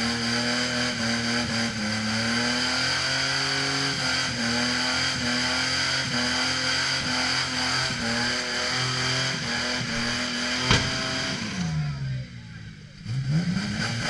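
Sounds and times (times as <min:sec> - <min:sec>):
car engine at high revs: 0:00.0 - 0:14.0
sharp crack: 0:09.8 - 0:11.6.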